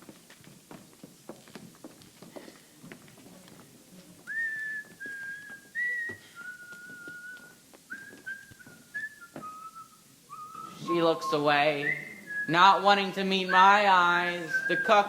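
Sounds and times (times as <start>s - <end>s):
person whistling a slow tune: 4.3s - 12.6s, 13.5s - 15.0s.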